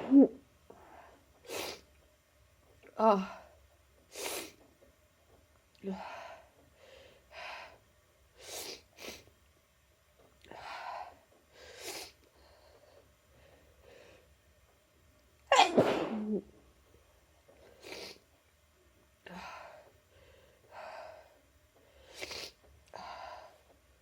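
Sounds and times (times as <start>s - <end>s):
person sneezing: 15.5s - 16.4s.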